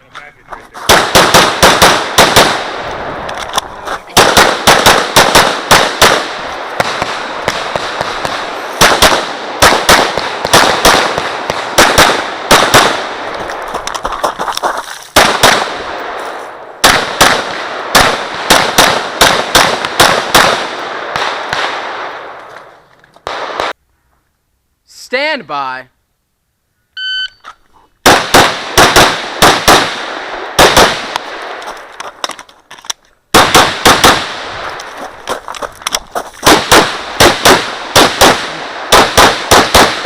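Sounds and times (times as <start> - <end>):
pistol shots with echo: 0.9 - 2.8, 4.2 - 13.2, 15.2 - 16.2, 16.8 - 22.4, 28.0 - 31.6, 33.3 - 34.6, 36.4 - 40.0.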